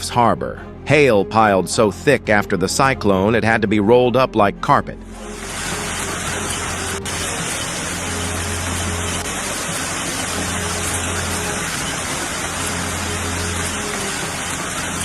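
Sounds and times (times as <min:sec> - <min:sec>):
heavy rain falling: 0:05.2 - 0:15.0.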